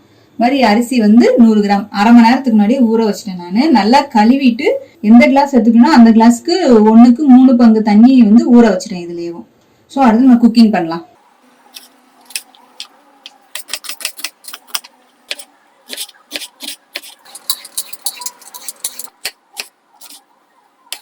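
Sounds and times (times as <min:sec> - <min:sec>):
kitchen utensils clinking: 0:11.7 - 0:20.2.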